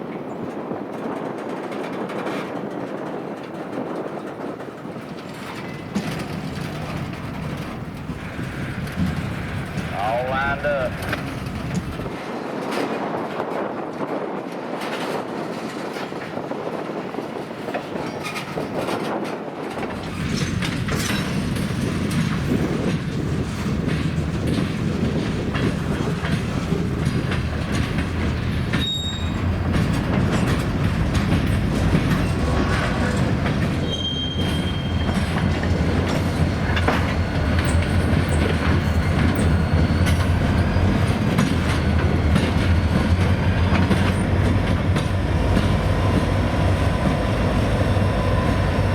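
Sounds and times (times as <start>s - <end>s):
train wheels clattering over rail joints: 0.0s - 48.9s
high wheel squeals: 28.7s - 29.7s, 32.1s - 43.1s.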